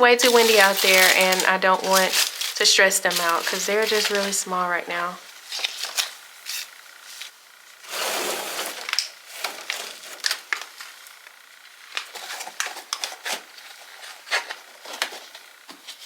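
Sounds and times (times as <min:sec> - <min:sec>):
plastic crinkling: 0:00.0 - 0:16.0.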